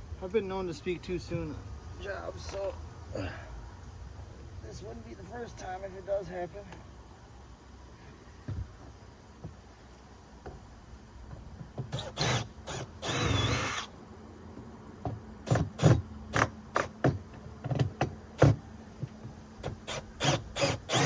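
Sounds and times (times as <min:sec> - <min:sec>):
power drill running: 0:11.9 - 0:13.9, 0:19.6 - 0:21.0
short drill buzzes: 0:11.9 - 0:13.9, 0:19.6 - 0:21.0
knocks and rattles of hardware: 0:15.0 - 0:19.4.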